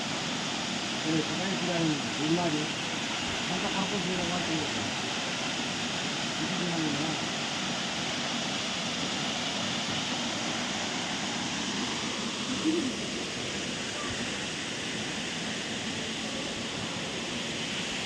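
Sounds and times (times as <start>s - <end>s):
waterfall rushing: 0.0s - 18.0s
brief voice-like sound: 12.5s - 13.0s.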